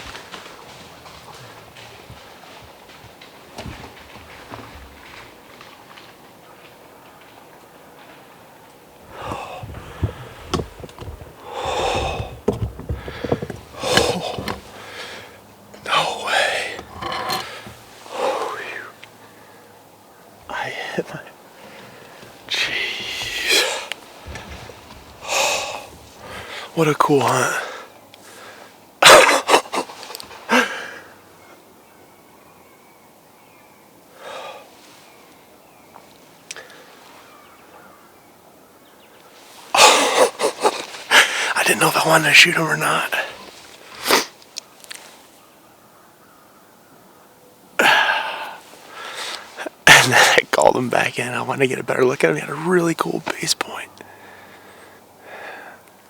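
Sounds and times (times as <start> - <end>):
faint whisper: 9.1 - 10.4, 15.8 - 19.0, 20.4 - 21.4, 22.5 - 23.9, 41.5 - 43.4, 49.6 - 54.1
man sighing: 9.1 - 10.6, 11.4 - 15.3, 39.8 - 43.3, 47.8 - 51.5
person breathing hard and gasping: 9.1 - 18.9, 30.5 - 31.0, 39.8 - 42.1, 47.8 - 49.8, 53.7 - 55.8.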